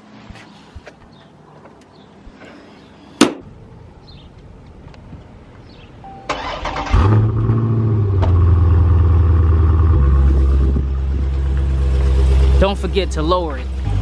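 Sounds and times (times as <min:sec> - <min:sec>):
car engine idling: 0:06.3 - 0:14.0.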